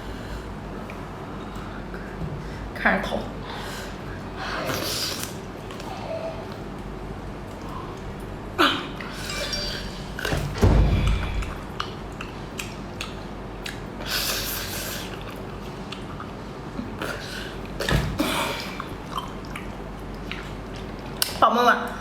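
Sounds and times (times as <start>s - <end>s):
loud smacking: 9.8s - 12.3s
close-miked wet chewing: 11.4s - 17.9s, 18.6s - 22.0s.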